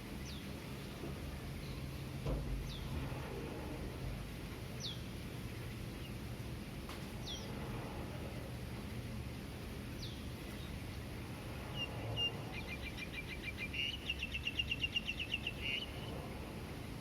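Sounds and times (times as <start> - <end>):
songbird calling: 0.0 - 3.1, 4.7 - 6.2, 7.2 - 7.6, 9.9 - 11.0, 11.6 - 16.3
distant traffic hum: 0.0 - 17.0.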